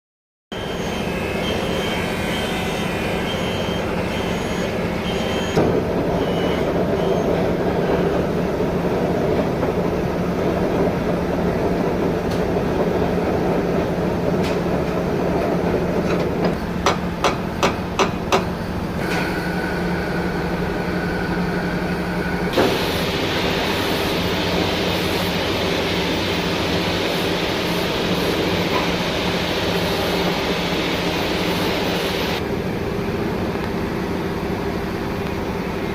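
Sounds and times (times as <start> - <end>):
sharp knocks: 16.1 - 18.5.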